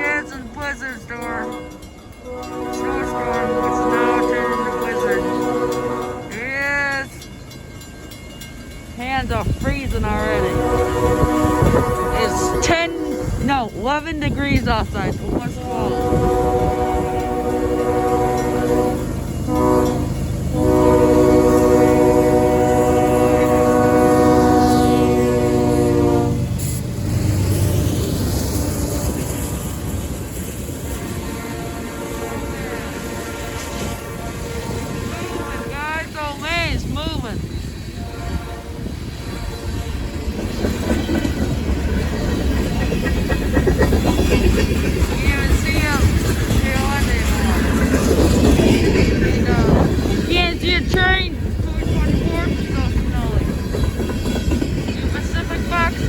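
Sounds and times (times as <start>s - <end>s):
locomotive air horn blasts: 0.0s - 6.4s, 10.2s - 13.4s, 15.4s - 26.8s, 30.9s - 36.0s, 38.0s - 40.2s
train rumbling: 0.0s - 56.0s
wheels clattering over rails: 40.2s - 56.0s.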